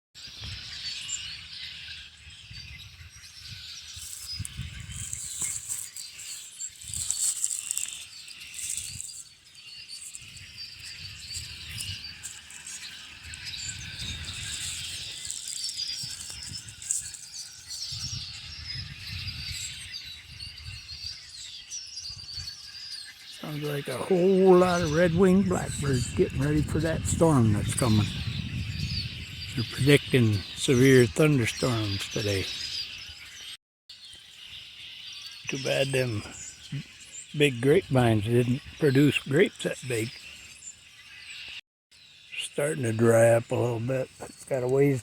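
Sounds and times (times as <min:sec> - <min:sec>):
flock of blackbirds calling: 0:00.2 - 0:45.0
low gusty rumble: 0:24.7 - 0:30.6.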